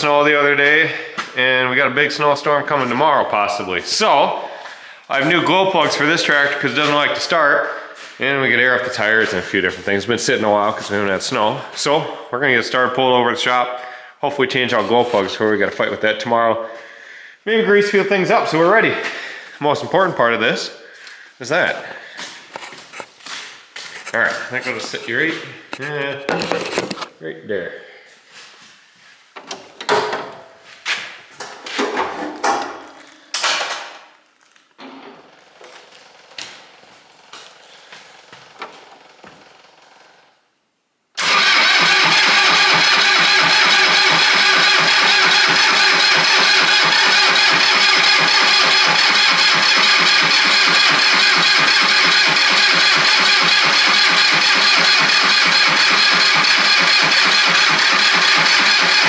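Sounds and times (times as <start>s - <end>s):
handling knocks and clatter: 25.7s - 27.2s, 29.4s - 35.0s
diesel tractor engine running: 35.4s - 40.2s, 41.2s - 59.0s.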